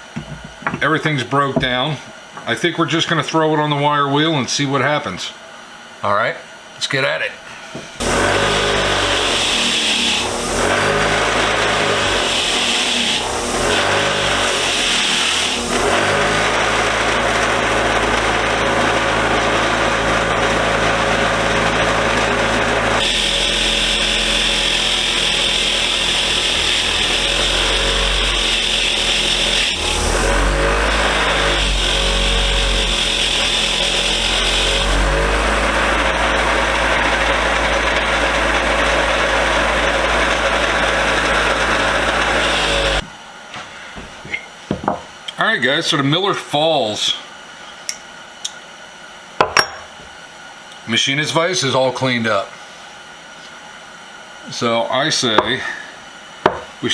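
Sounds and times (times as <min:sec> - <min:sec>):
wire wheel scrubbing metal: 0:07.9 - 0:43.1.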